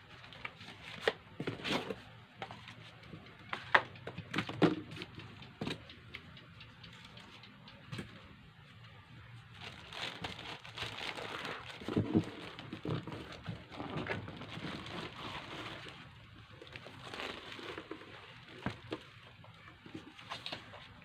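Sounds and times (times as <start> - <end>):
packaging rustling and crinkling: 0.0 - 2.8, 9.5 - 21.0.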